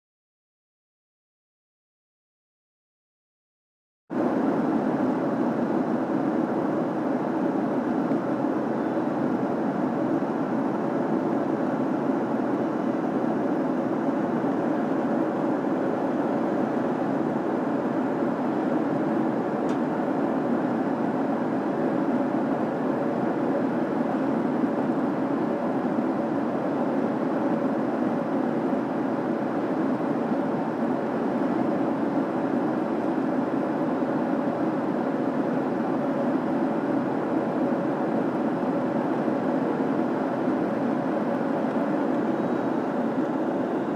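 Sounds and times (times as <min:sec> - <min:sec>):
airplane cabin engine and airflow: 0:04.1 - 0:43.9
faint hum: 0:04.1 - 0:43.9.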